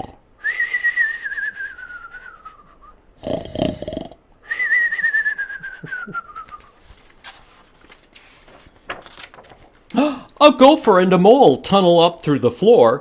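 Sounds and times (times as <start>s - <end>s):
man imitating snoring: 0.0s - 0.2s, 3.2s - 4.2s.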